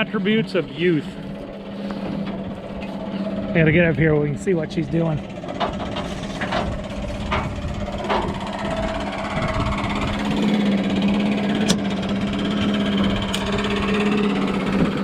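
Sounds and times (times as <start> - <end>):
engine humming: 0.0 - 15.0
sharp metallic clicks and knocks: 11.6 - 12.0.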